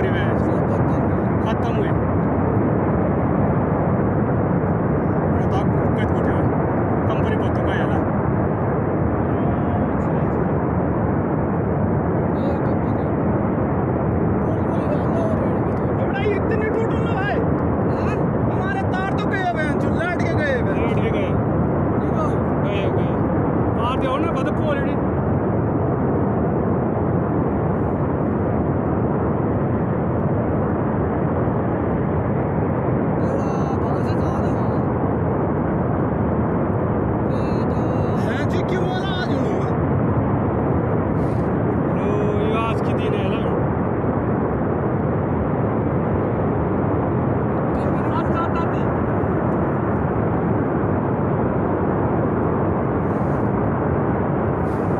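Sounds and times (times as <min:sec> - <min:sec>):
flood torrent rumbling: 0:00.0 - 0:25.3, 0:25.9 - 0:54.9.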